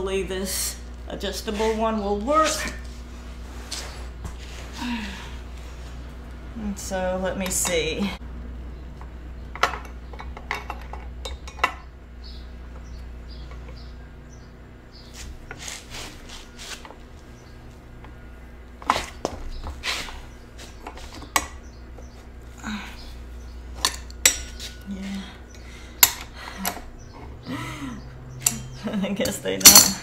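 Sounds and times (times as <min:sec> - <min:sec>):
wrench clinking and scraping: 0:09.6 - 0:11.9, 0:23.8 - 0:24.8, 0:26.0 - 0:26.8, 0:28.4 - 0:30.0.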